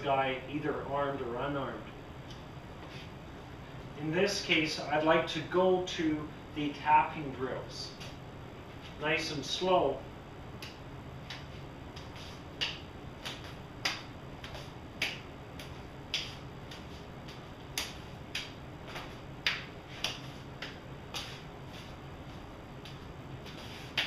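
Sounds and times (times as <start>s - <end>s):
hands and forearms slapping: 10.6s - 21.9s, 22.8s - 24.0s.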